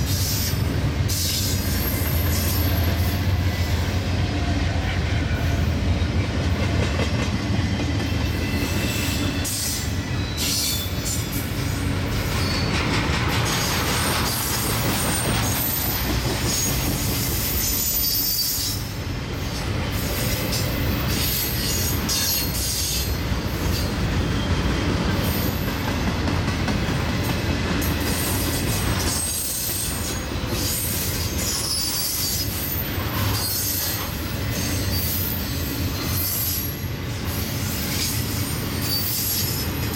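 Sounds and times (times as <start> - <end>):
train rumbling: 0.0 - 39.9
wheels squealing on rails: 0.0 - 39.9.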